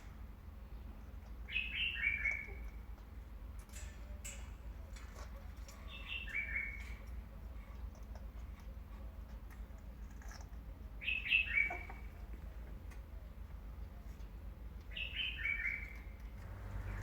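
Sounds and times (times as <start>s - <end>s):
faint clicks: 16.0s - 17.0s.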